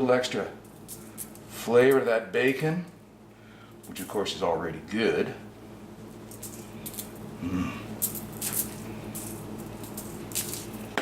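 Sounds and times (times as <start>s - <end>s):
spice shaker rattling: 6.2s - 7.2s, 8.0s - 11.0s.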